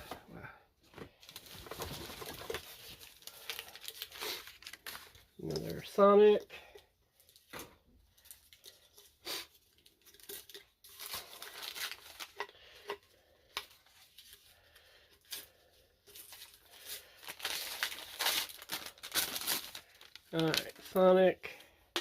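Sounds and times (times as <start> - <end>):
packing wrap crinkling and tearing: 1.2 - 5.9, 8.1 - 12.9, 15.2 - 21.2.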